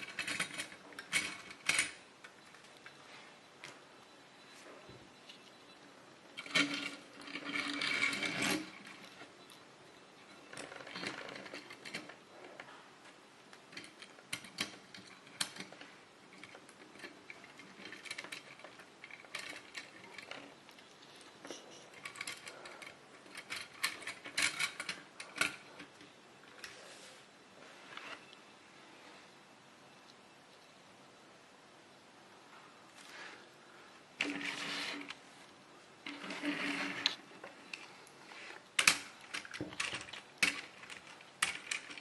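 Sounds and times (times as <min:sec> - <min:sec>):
plastic toy cars clicking and rattling: 0:00.0 - 0:02.8, 0:06.4 - 0:09.3, 0:10.4 - 0:12.8, 0:13.5 - 0:26.7, 0:36.0 - 0:42.0.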